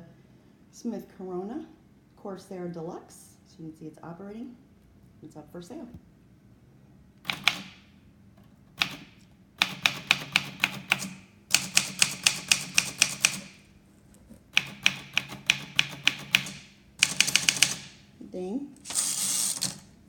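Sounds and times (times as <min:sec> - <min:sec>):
manual typewriter keystrikes: 0:07.3 - 0:07.7, 0:08.8 - 0:13.6, 0:14.5 - 0:18.0, 0:18.8 - 0:19.9.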